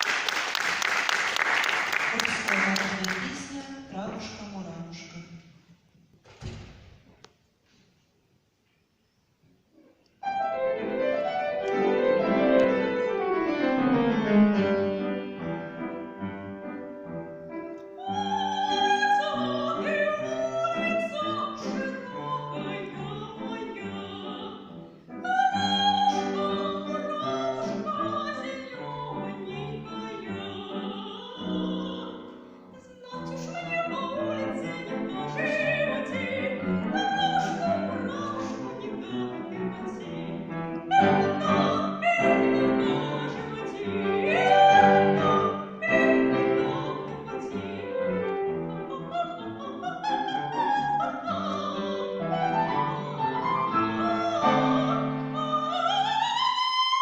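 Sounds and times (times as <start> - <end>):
piano accompaniment: 10.2 - 32.7, 33.3 - 56.5
person singing operatically: 40.9 - 48.0.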